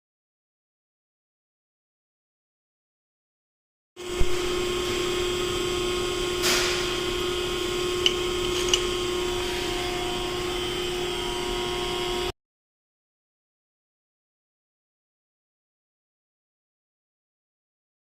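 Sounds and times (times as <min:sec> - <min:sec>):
motor whining: 0:04.0 - 0:12.3.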